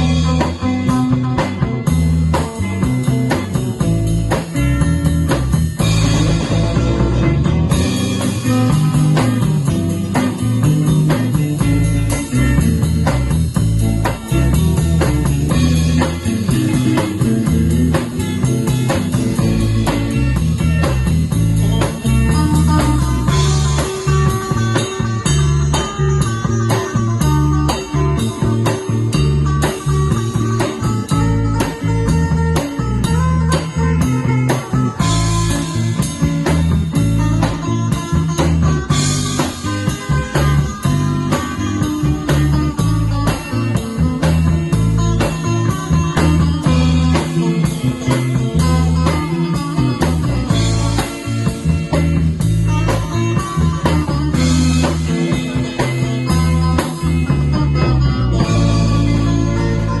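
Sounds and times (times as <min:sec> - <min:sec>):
band playing: 0:00.0 - 1:00.0
bass guitar: 0:00.0 - 1:00.0
drum kit: 0:00.0 - 1:00.0
electric guitars picking melody: 0:00.0 - 1:00.0.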